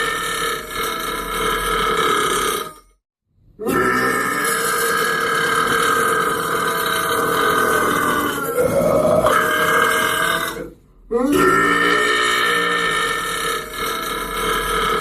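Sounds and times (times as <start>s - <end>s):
person burping: 3.6s - 15.0s.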